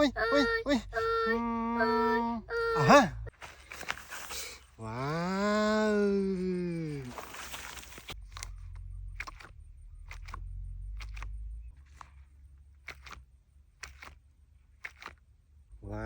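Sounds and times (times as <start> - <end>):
low hum: 4.0 - 16.0
sharp clicks: 8.1 - 15.3.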